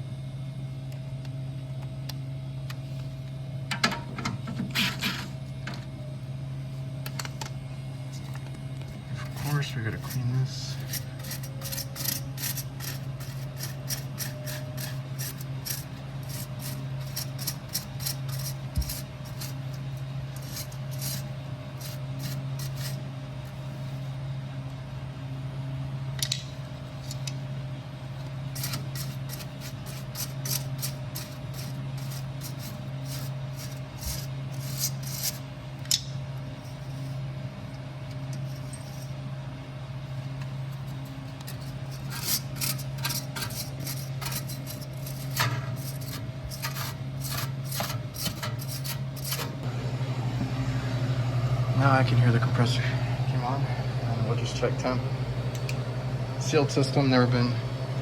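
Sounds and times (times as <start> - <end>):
scrubbing and scraping strokes: 9.2 - 23.1, 28.5 - 35.5, 40.8 - 49.6
low motor hum: 35.6 - 58.0.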